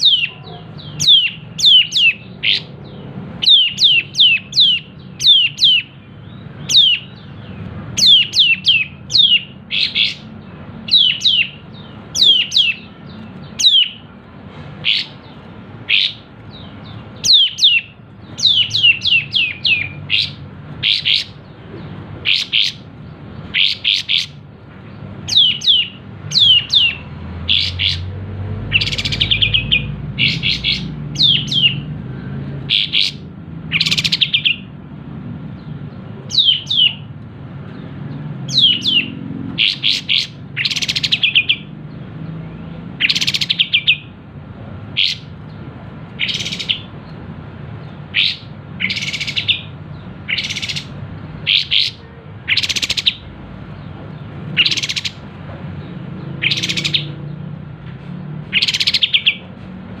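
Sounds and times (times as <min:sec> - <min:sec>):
fast rattling bird call: 0:00.0 - 0:02.7, 0:07.9 - 0:14.1, 0:14.8 - 0:21.6, 0:22.2 - 0:24.5, 0:25.2 - 0:28.1, 0:28.7 - 0:31.9, 0:32.6 - 0:34.6, 0:38.5 - 0:41.7, 0:43.0 - 0:44.1, 0:44.9 - 0:45.4, 0:46.1 - 0:47.0, 0:48.1 - 0:53.3, 0:54.5 - 0:55.2, 0:56.4 - 0:57.2, 0:58.5 - 0:59.4
songbird singing sharp high notes: 0:08.0 - 0:14.1, 0:14.8 - 0:21.4, 0:28.7 - 0:31.9.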